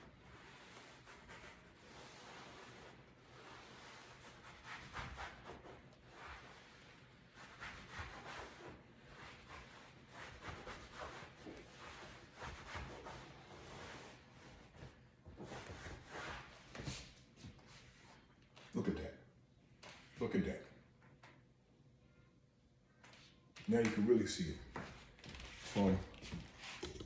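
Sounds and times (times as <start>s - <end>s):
cloth rubbing on leather: 0.0s - 18.2s.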